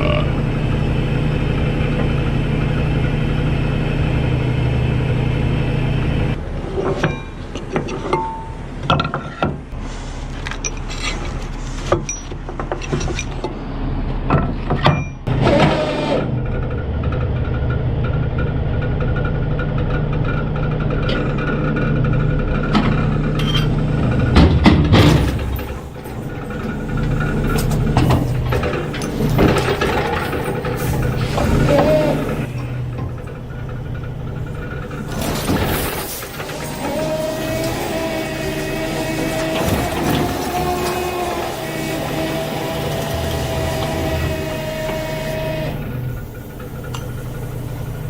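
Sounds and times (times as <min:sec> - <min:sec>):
truck engine running: 0:00.0 - 0:07.8, 0:15.3 - 0:48.0
knocks and rattles: 0:16.4 - 0:37.0.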